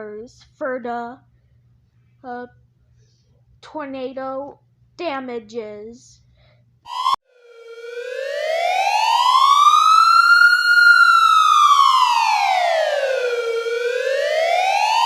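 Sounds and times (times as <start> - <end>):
wailing siren: 6.9 - 15.0.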